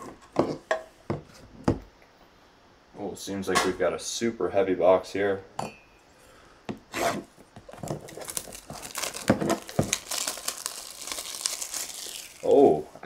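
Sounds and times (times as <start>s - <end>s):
plastic packaging crinkling and tearing: 7.6s - 13.0s.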